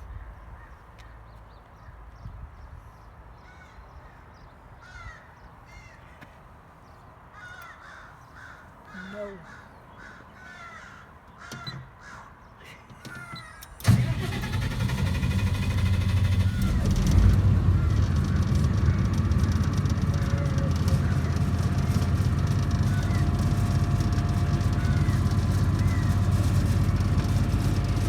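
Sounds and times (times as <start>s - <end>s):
birds calling: 0.0s - 28.0s
diesel generator starting and running: 12.9s - 28.0s.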